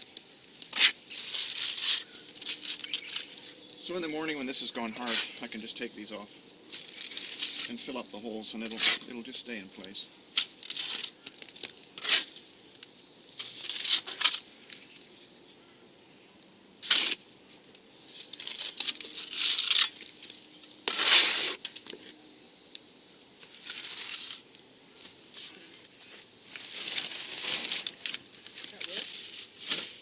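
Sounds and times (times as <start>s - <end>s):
trowel scraping wet cement: 5.0s - 5.6s, 8.6s - 9.2s, 12.0s - 12.4s, 20.9s - 21.7s.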